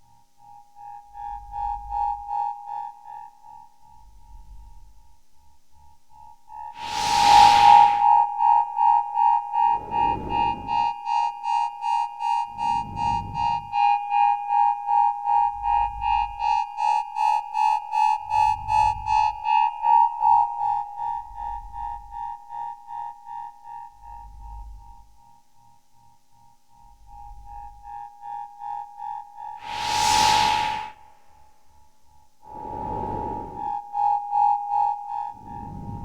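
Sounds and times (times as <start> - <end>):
noisy whoosh and thump: 6.8 - 8.2, 29.6 - 31.2.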